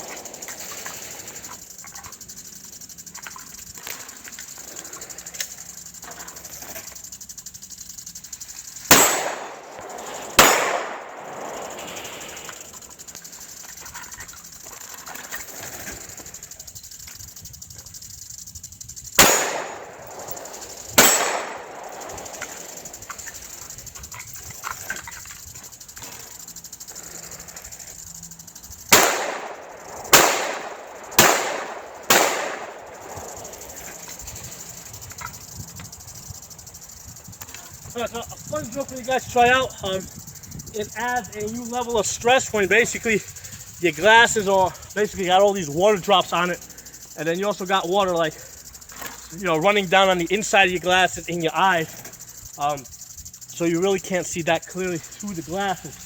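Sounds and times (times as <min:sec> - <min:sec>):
high-pitched insect buzz: 0:00.0 - 0:56.0
pistol shots with echo: 0:08.9 - 0:11.9, 0:19.2 - 0:22.7, 0:28.9 - 0:33.4.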